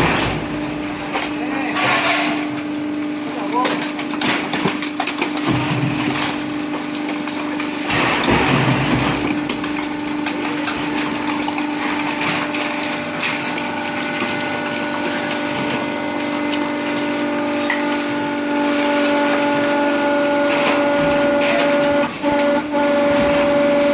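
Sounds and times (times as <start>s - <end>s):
hydraulic pump hum: 5.4s - 23.9s.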